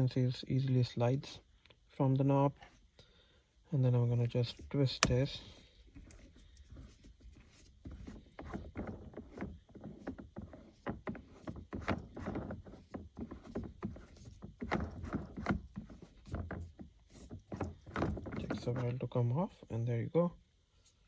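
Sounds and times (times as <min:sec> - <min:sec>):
shift knob clicking and knocking: 0:05.0 - 0:06.2.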